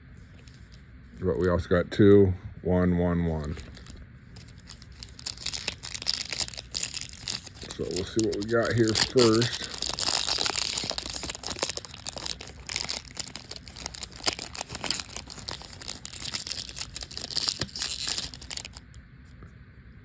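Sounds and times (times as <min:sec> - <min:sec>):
foil wrapper tearing and crinkling: 0:03.4 - 0:19.0.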